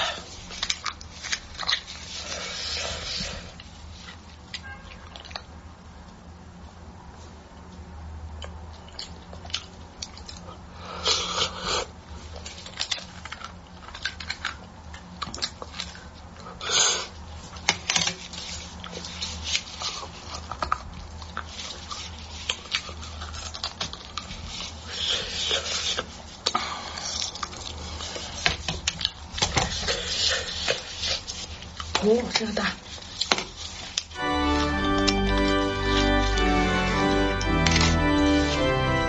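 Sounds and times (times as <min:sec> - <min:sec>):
wet eating clicks and smacks: 0:08.3 - 0:10.5, 0:12.6 - 0:16.2.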